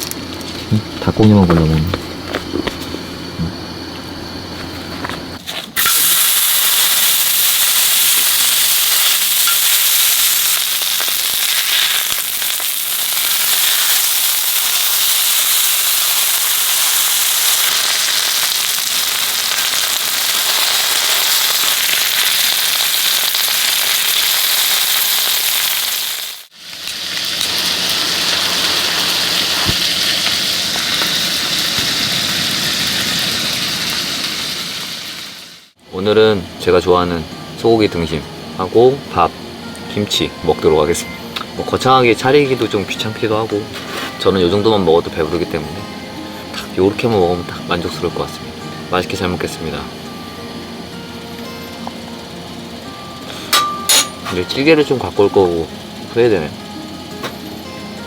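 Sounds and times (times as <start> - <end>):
meat sizzling on hot metal: 5.6 - 35.8.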